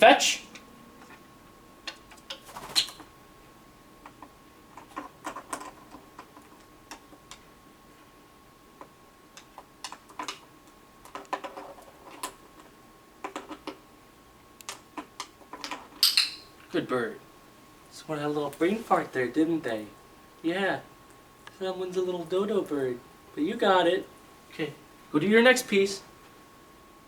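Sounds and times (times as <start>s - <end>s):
parrot handling puzzle pieces: 4.0s - 8.1s, 8.8s - 13.8s, 14.6s - 16.7s.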